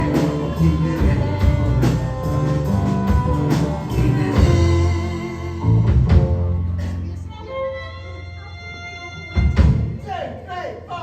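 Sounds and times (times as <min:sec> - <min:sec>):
steady drum beat: 0:00.0 - 0:07.1
live folk-rock band: 0:00.0 - 0:10.0.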